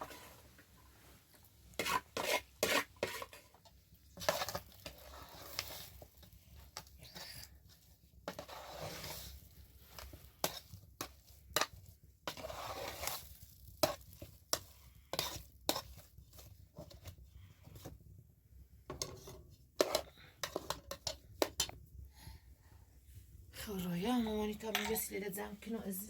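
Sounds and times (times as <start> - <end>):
utensils scraping pots: 1.7 - 3.5, 18.9 - 21.8
dishes clinking: 24.7 - 25.1.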